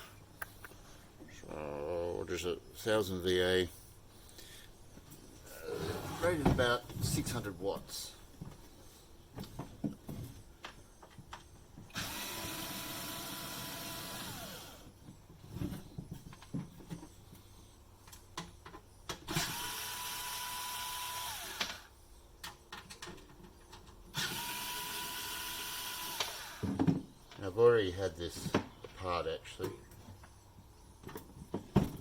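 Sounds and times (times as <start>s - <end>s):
electric drill-driver running: 12.0s - 14.8s, 19.3s - 21.9s, 24.2s - 26.6s.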